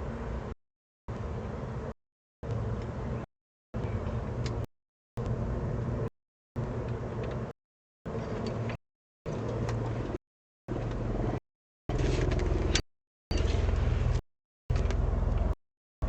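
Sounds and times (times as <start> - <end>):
low hum and rumble: 0.0 - 15.6.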